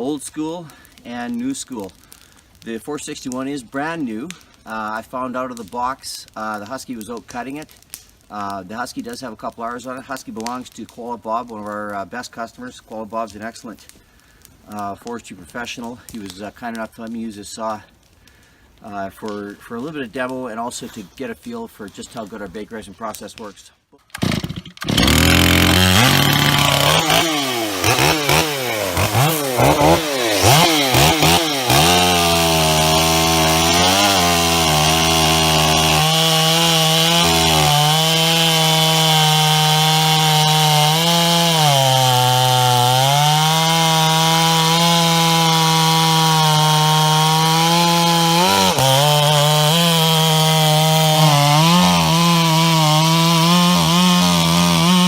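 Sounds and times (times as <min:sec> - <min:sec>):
chainsaw revving and cutting wood: 0:24.0 - 0:55.0.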